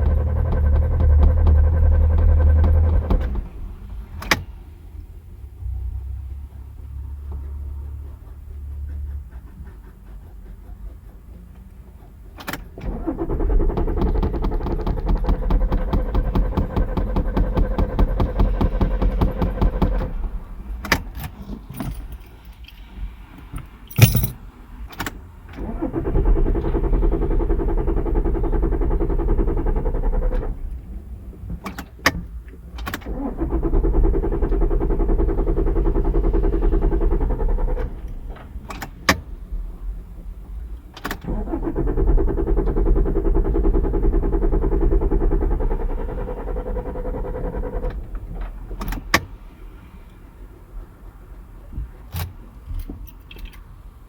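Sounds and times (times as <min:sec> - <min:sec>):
car engine cranking: 0:00.0 - 0:04.5, 0:12.4 - 0:22.3, 0:23.4 - 0:24.4, 0:25.0 - 0:31.0, 0:32.1 - 0:39.8, 0:40.9 - 0:49.3
sharp clicks: 0:23.6 - 0:24.4.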